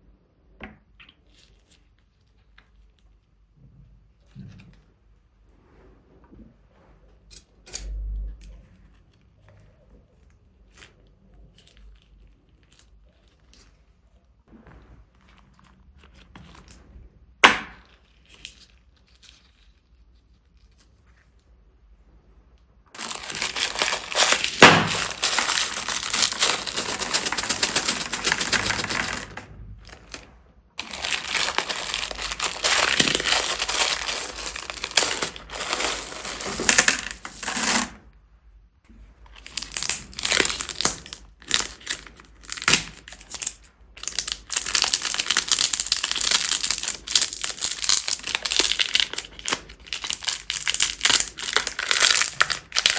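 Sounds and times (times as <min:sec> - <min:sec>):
plastic bags crinkling: 0:23.0 - 0:30.2, 0:30.8 - 0:37.8, 0:39.4 - 0:52.9.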